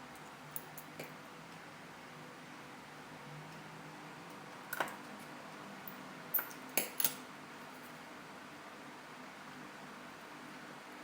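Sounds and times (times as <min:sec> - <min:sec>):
small tools clicking and tapping: 0:04.7 - 0:05.0, 0:05.9 - 0:07.2.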